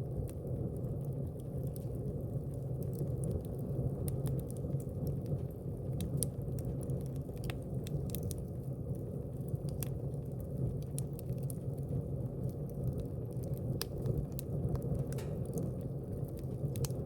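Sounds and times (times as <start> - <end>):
fire crackles and pops: 0.0 - 17.0
low rumble of flames: 0.0 - 17.0.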